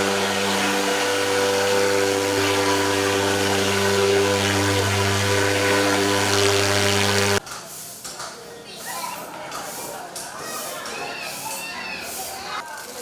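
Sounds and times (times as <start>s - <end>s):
fogging machine engine drone: 0.0s - 7.4s.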